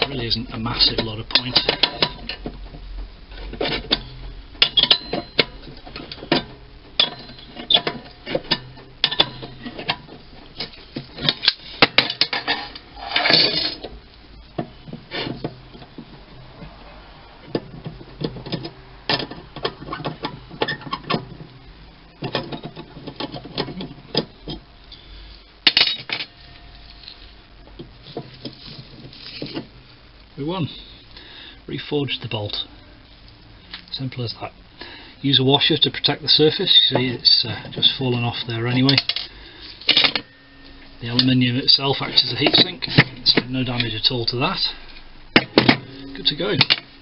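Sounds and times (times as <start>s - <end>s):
metal scrape: 3.3s - 14.1s, 14.8s - 21.5s, 36.5s - 47.0s.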